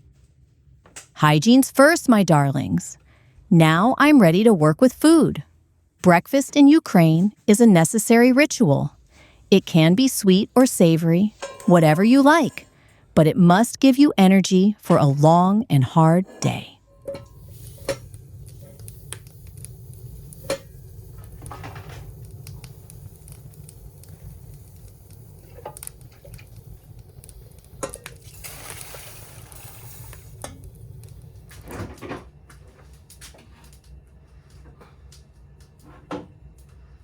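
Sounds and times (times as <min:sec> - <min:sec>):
dishes and utensils clinking: 0:11.3 - 0:12.7
hiss: 0:17.3 - 0:31.0.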